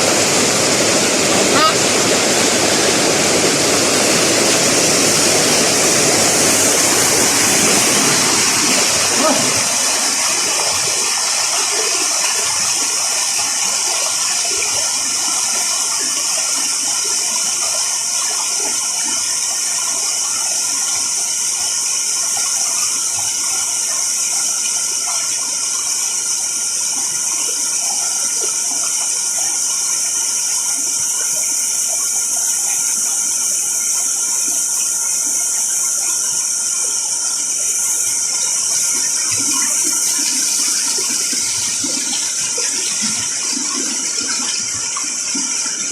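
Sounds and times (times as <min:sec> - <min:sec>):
river water rushing: 0:00.0 - 0:18.7, 0:37.4 - 0:45.9.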